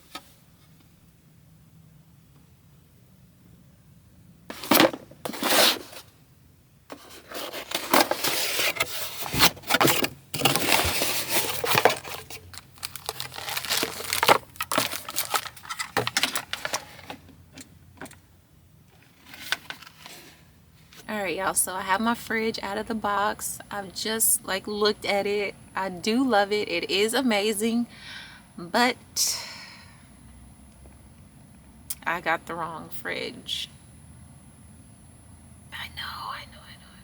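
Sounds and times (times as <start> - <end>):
packaging rustling and crinkling: 6.9 - 17.2, 19.0 - 20.4
packaging ripping: 7.3 - 17.1.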